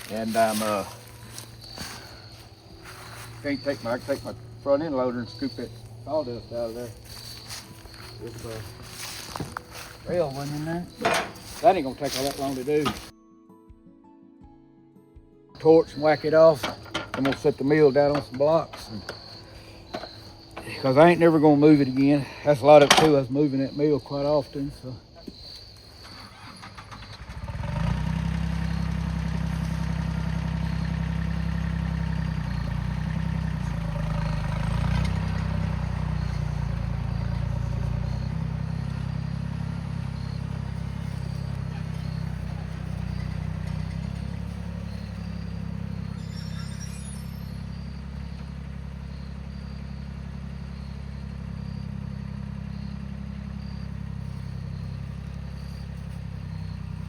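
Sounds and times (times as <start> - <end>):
engine running: 0.0 - 13.1, 15.6 - 57.0
light rattle: 6.9 - 13.1, 34.1 - 48.7.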